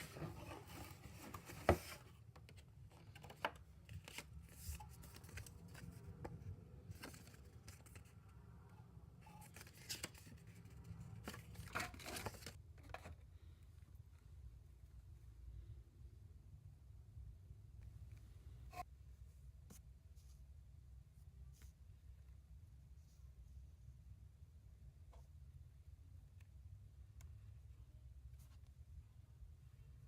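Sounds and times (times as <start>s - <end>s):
packaging rustling and tearing: 11.2s - 12.6s.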